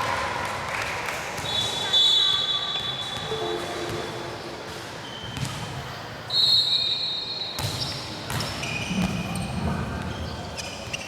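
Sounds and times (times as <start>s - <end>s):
shoes squeaking on floor: 6.3s - 11.0s.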